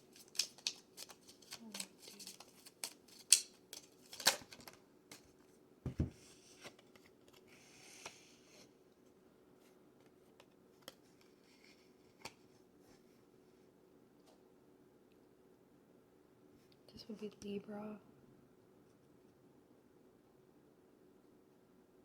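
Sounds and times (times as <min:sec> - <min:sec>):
cards sliding: 0:00.1 - 0:05.2
cards snapping: 0:00.1 - 0:05.2.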